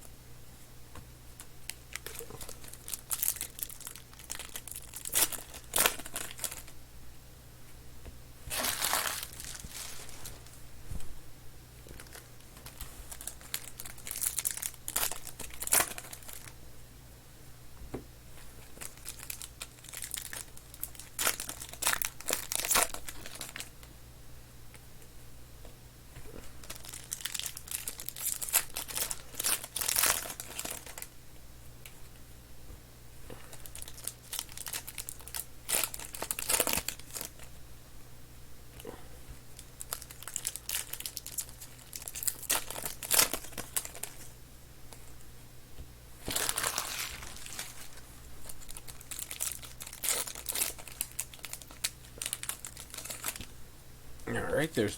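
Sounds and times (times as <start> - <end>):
steady low hum: 0.0 - 54.9
plastic wrappers torn and crinkled: 1.6 - 6.8, 8.5 - 10.5, 11.9 - 16.5, 18.7 - 23.8, 26.6 - 31.2, 33.4 - 37.5, 39.6 - 44.3, 46.2 - 53.5.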